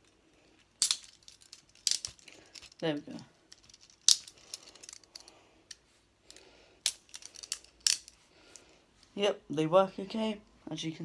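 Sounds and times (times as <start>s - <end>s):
metal handcuffs clicking: 0.0s - 8.2s.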